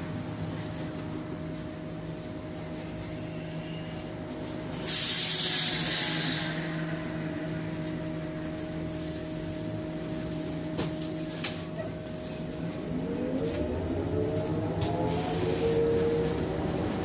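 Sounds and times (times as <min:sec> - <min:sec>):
trolleybus electric hum: 0:00.0 - 0:17.0
compressed air hiss: 0:04.9 - 0:06.8.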